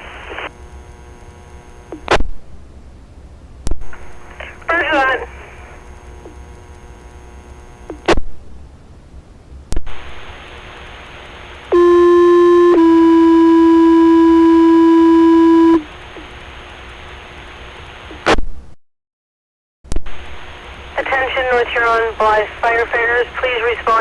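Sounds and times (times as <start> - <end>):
radio static hiss: 0.0 - 2.2, 3.7 - 8.2, 9.8 - 18.4, 19.9 - 24.0
two-tone pager alert: 11.8 - 15.8.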